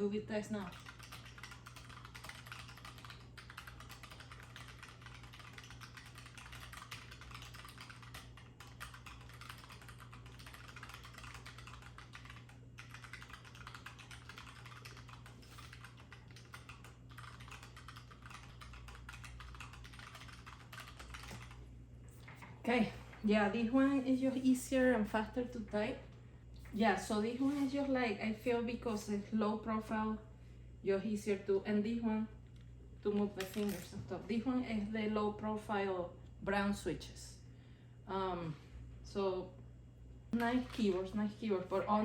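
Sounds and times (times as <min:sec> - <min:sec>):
mechanical keyboard typing: 0:00.5 - 0:21.6, 0:40.4 - 0:41.2.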